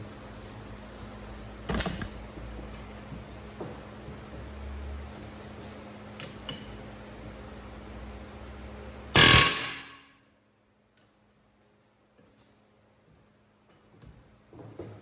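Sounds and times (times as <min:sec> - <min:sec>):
pneumatic impact tool burst: 0:09.2 - 0:10.0.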